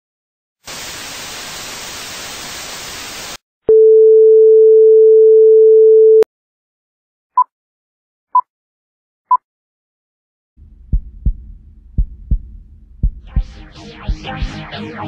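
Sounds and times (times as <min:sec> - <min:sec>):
white noise hiss: 0:00.7 - 0:03.4.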